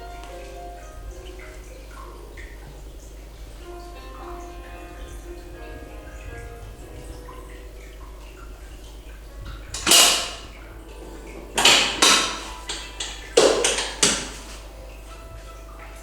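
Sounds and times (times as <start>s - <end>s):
sharp knocks: 9.7s - 10.6s, 11.6s - 14.6s.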